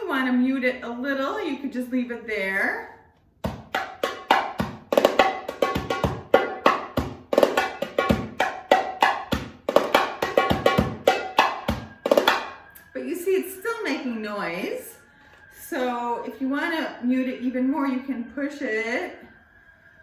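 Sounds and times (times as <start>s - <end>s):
muted hand drum strokes: 3.4s - 12.5s.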